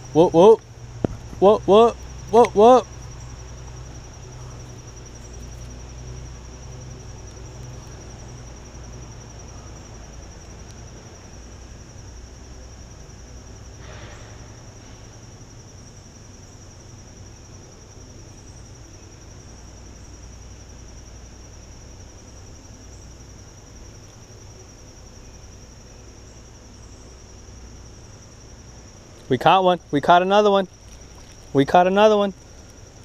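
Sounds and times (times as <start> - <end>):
insects trilling: 0.0 - 33.0
low outdoor rumble: 0.0 - 33.0
soft rustle: 30.7 - 31.7.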